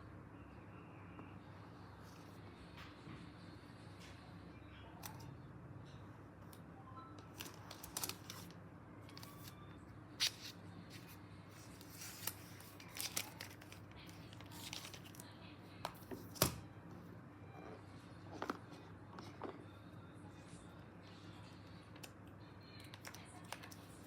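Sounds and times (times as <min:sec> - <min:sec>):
packaging rustling and tearing: 0:07.4 - 0:08.5, 0:10.2 - 0:13.8.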